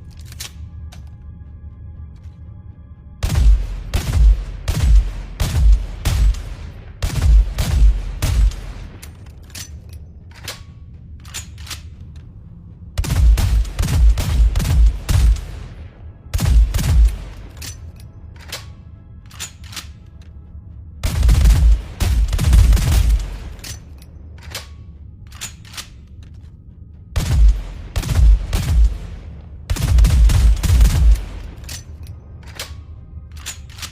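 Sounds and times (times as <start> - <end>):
rifle shots: 3.2 - 9.3, 13.0 - 17.8, 21.0 - 24.7, 27.2 - 32.8.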